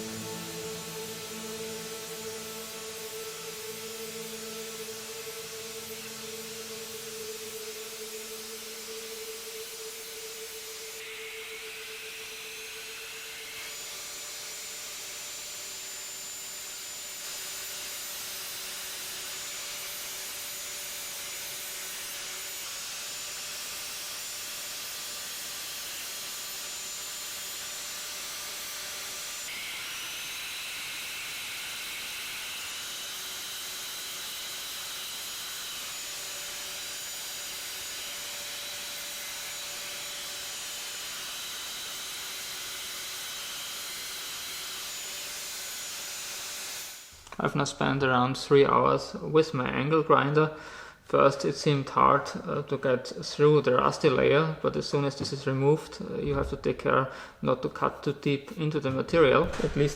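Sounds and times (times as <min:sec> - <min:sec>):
angle grinder grinding metal: 0:00.0 - 0:47.2, 0:59.0 - 0:59.9.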